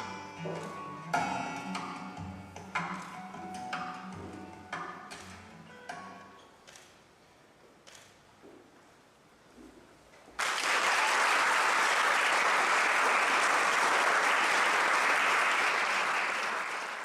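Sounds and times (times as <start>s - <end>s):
audience applause: 10.4s - 17.0s.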